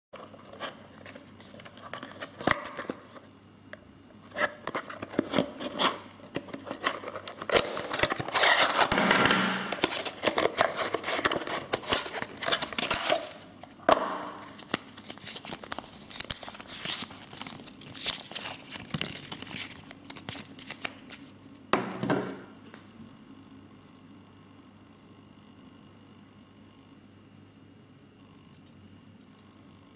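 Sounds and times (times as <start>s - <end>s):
packaging rustling and tearing: 4.3s - 21.4s.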